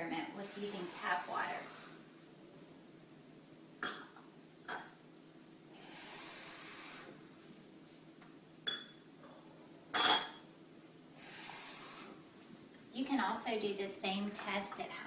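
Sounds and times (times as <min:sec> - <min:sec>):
steady hiss: 0:00.3 - 0:02.2, 0:05.7 - 0:07.6, 0:11.1 - 0:12.6
glass clinking: 0:03.8 - 0:05.0, 0:08.7 - 0:09.0, 0:09.9 - 0:10.5.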